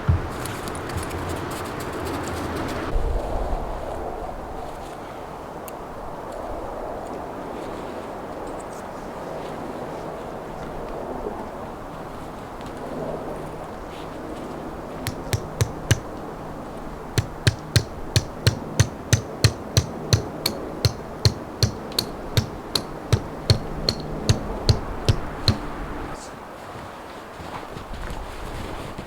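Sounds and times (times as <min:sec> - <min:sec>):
sharp ringing knocks: 0:15.1 - 0:16.1, 0:17.2 - 0:26.0.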